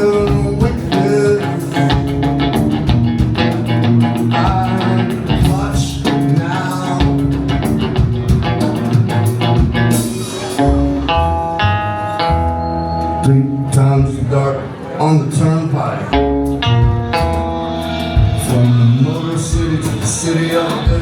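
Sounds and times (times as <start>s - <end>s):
busy drum beat: 0.0s - 11.5s, 16.2s - 21.0s
live rock band playing: 0.0s - 14.5s, 16.1s - 21.0s.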